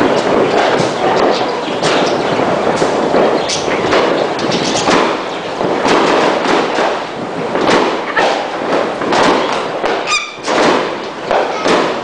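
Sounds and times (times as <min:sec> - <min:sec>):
fireworks bangs: 0:00.0 - 0:12.0.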